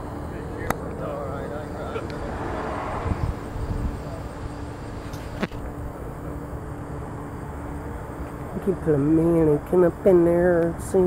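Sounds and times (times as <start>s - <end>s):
faint steady hum: 0.0s - 11.0s
low rumble: 2.1s - 5.0s.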